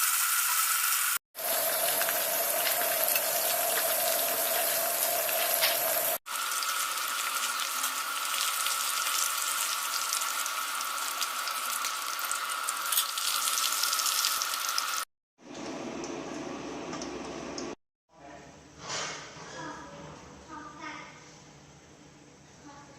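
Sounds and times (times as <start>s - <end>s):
water running into sink: 0.0s - 17.8s.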